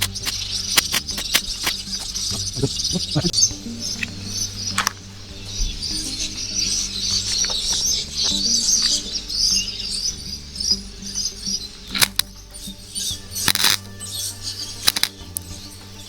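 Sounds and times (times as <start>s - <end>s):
welding arc crackling: 0.0s - 3.3s
background music: 0.0s - 16.0s.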